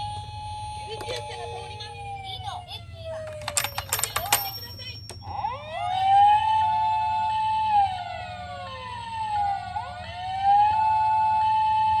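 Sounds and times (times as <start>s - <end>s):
wailing toy siren: 0.0s - 3.6s, 5.3s - 12.0s
two-note toy siren: 5.2s - 12.0s.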